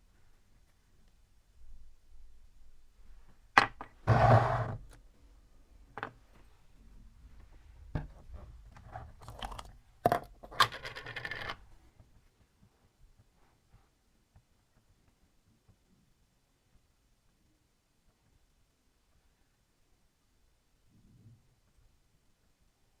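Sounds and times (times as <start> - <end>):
tool scraping: 4.1 - 4.9.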